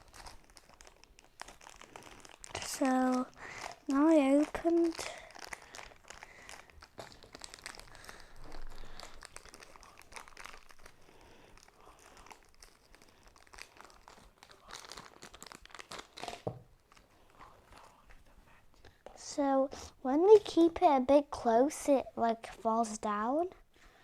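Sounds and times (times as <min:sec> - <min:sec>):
packaging crinkling and rustling: 0:00.0 - 0:18.1.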